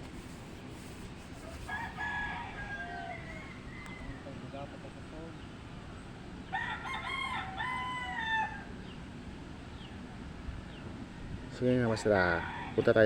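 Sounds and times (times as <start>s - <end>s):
rooster crowing: 1.4s - 4.7s, 6.4s - 9.0s, 11.9s - 13.0s.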